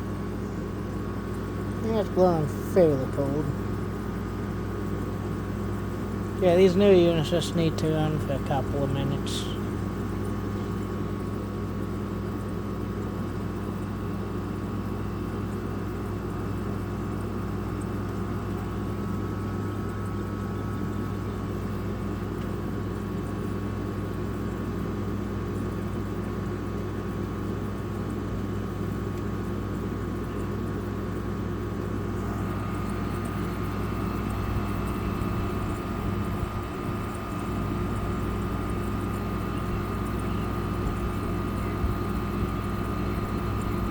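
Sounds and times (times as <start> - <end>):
window air conditioner humming: 0.0 - 43.9.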